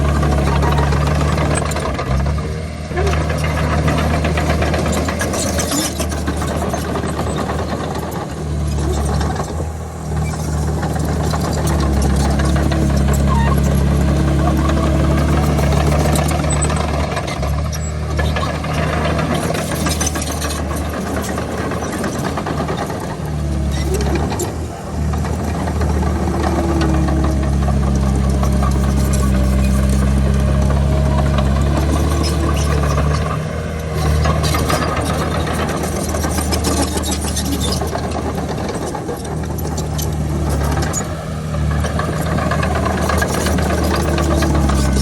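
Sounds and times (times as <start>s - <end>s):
heavy machinery diesel engine: 0.0s - 45.0s.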